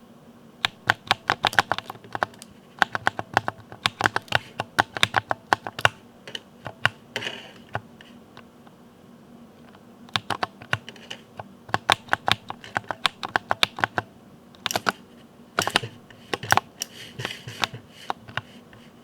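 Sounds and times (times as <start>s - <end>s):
rapid mechanical keyboard clicks: 0.6s - 7.9s, 10.1s - 15.0s, 15.6s - 18.6s.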